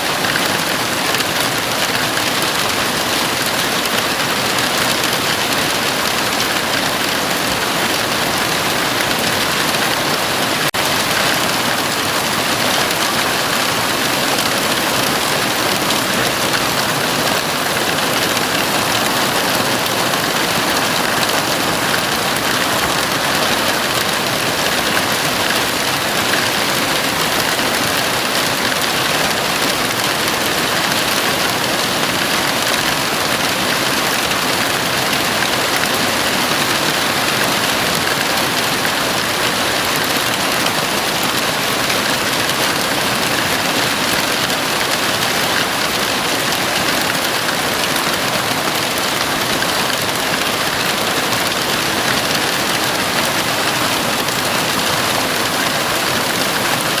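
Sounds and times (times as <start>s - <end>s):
heavy rain on a roof: 0.0s - 57.0s.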